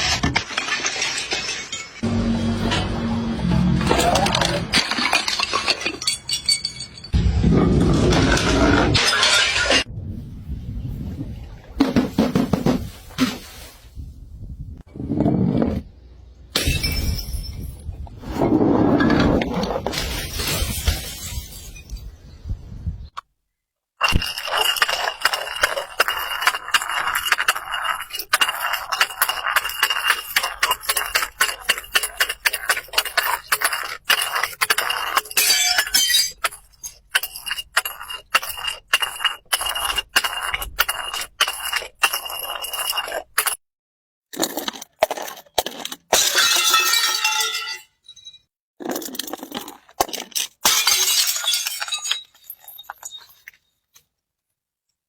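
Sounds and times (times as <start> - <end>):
glass cracking and crunching: 24.0 - 40.6, 44.4 - 53.7.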